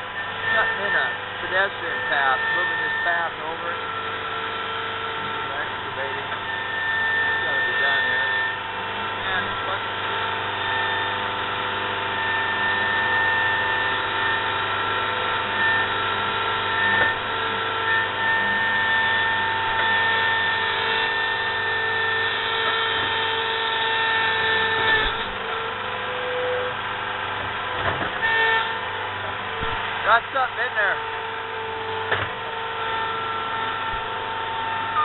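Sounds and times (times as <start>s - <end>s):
steady high whine: 0.0s - 35.0s
skid steer engine under load: 7.2s - 22.8s, 24.0s - 35.0s.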